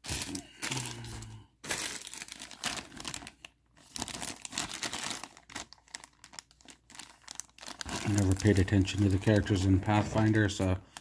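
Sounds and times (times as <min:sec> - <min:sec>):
plastic bags crinkling and tearing: 0:00.0 - 0:11.0.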